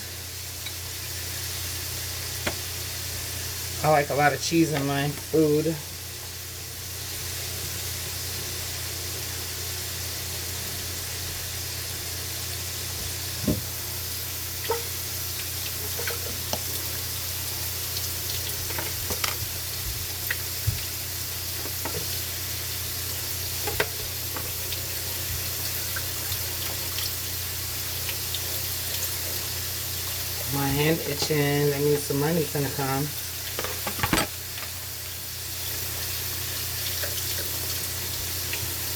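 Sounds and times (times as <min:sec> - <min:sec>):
food sizzling in a pan: 0:00.0 - 0:38.9
kitchen utensils clicking: 0:33.5 - 0:34.8.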